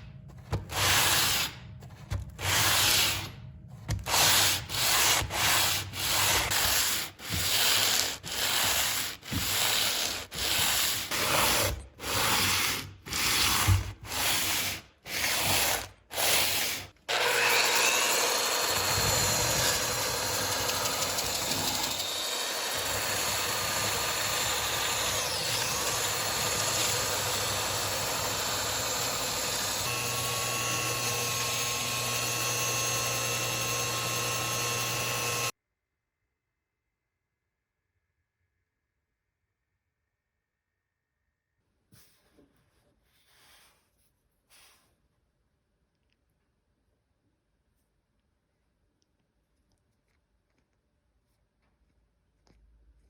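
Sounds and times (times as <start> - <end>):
hand sanding strokes: 4.1 - 17.0
small power tool whining: 17.1 - 35.6.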